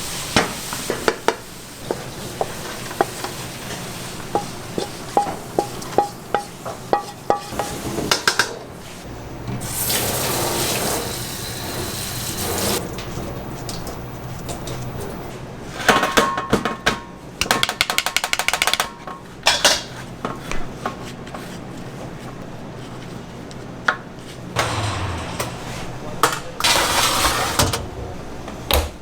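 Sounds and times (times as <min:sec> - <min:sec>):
water tap running: 0:09.0 - 0:15.3.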